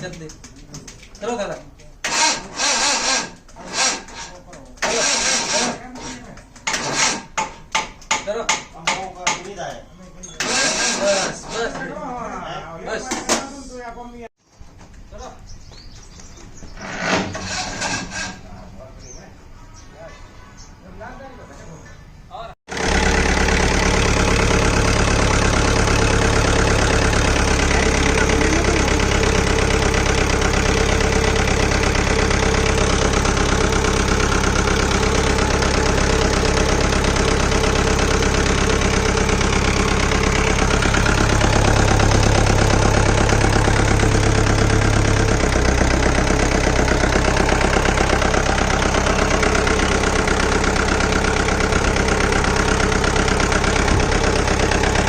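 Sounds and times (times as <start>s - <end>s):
car engine idling loudly: 22.7s - 55.0s.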